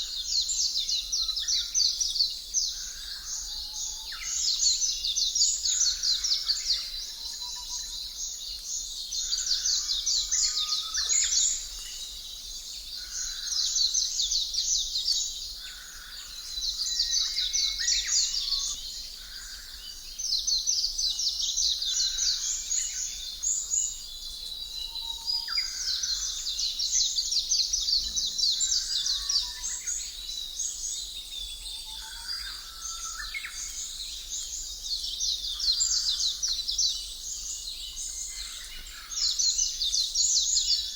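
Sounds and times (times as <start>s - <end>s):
birds chirping and trilling: 15.6s - 40.9s.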